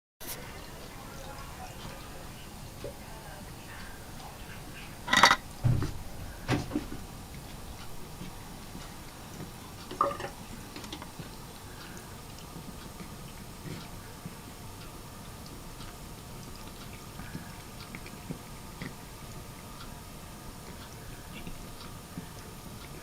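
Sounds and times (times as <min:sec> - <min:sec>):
cat lapping water: 0:00.2 - 0:23.0
dull knocks: 0:05.6 - 0:07.0.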